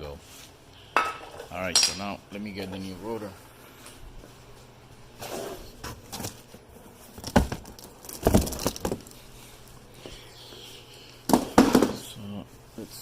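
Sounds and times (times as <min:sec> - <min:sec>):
packaging rustling: 0:06.0 - 0:09.8.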